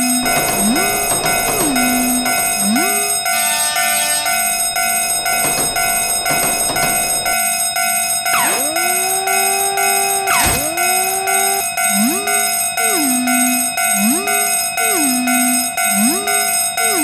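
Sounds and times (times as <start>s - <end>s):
swooping tones: 0.0s - 12.2s
held tones: 0.0s - 13.6s
railroad crossing bell clanging: 0.0s - 17.0s.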